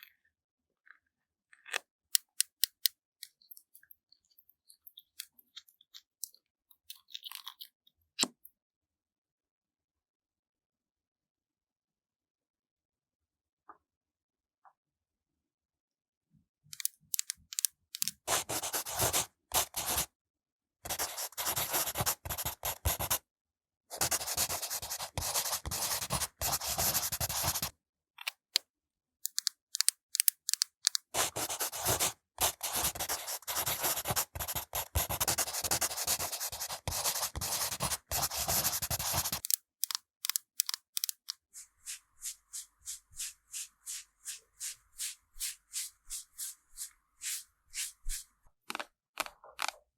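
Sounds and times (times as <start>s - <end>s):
brushes scratching melon rind: 31.2s - 39.6s, 40.6s - 48.3s.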